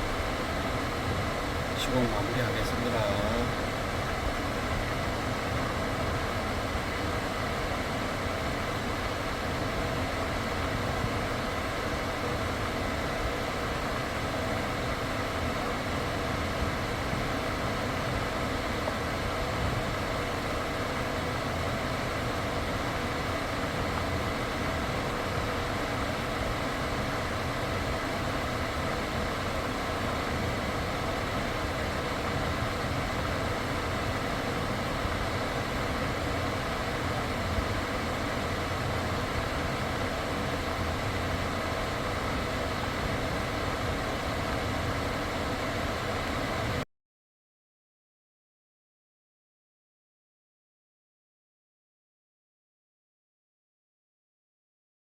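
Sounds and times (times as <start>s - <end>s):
air conditioning running: 0.0s - 46.8s.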